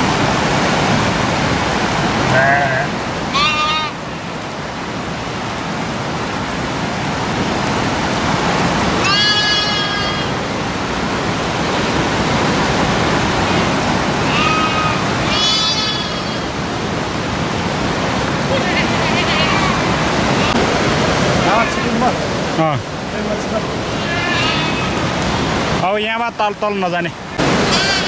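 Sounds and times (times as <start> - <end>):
running water rushing: 0.0 - 28.0
sheep bleating: 2.3 - 4.0, 9.0 - 10.4, 14.2 - 16.6, 23.9 - 25.1, 27.7 - 28.0.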